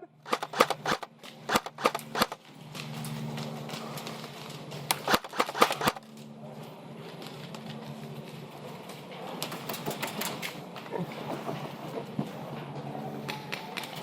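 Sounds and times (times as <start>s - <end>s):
steady low hum: 0.0s - 9.9s
airsoft rifle shots: 0.2s - 2.4s, 4.9s - 6.0s.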